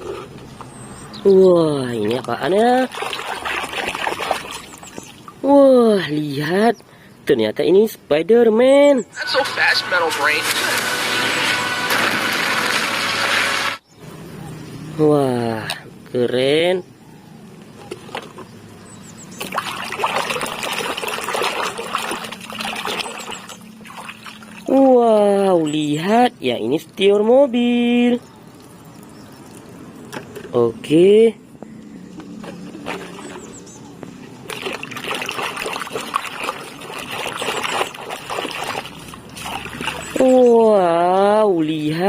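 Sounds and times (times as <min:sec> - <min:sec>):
water splashing and trickling: 0:01.5 - 0:05.8, 0:19.3 - 0:30.5, 0:32.5 - 0:42.0.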